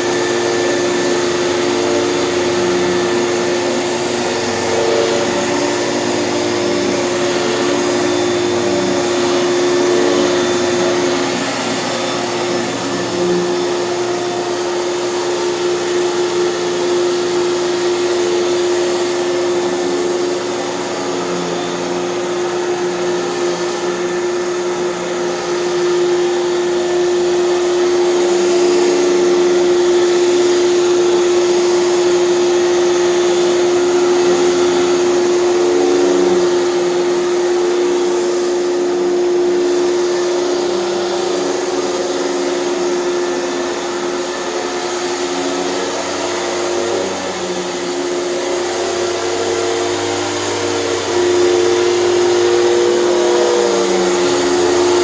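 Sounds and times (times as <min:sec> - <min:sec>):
vacuum cleaner running on carpet: 0:00.0 - 0:55.0.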